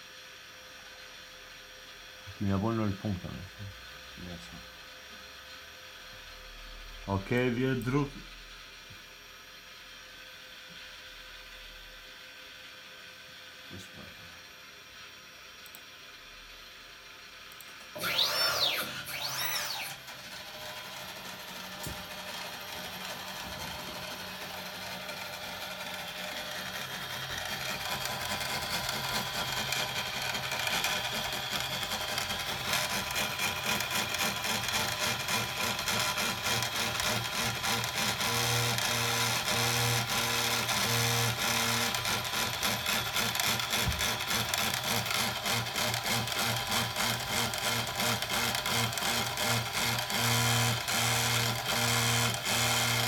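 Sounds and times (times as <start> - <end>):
stepper motors whirring: 17.5 - 53.0
whines sweeping in pitch: 18.0 - 20.1.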